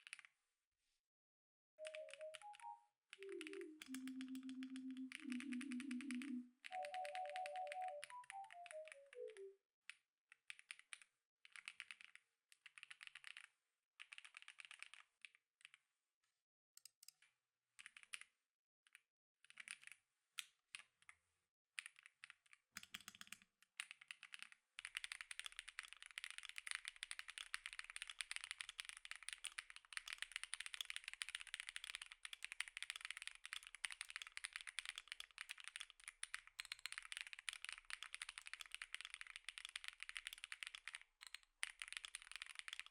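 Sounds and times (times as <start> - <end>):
keyboard typing: 1.8 - 9.6, 21.8 - 42.9.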